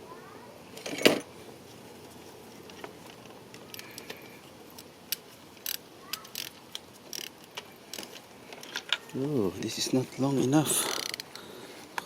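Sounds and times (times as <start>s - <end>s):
metallic ratchet clicks and clinks: 5.6s - 7.3s.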